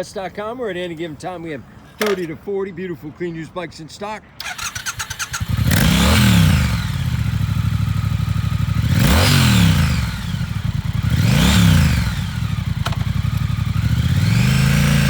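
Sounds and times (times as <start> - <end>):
motorcycle engine idling and revving: 4.4 - 15.0.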